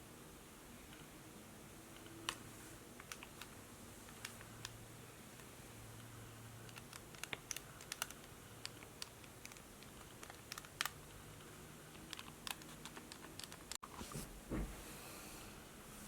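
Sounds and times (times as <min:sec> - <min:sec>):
faint steady hiss: 0:00.0 - 0:16.0.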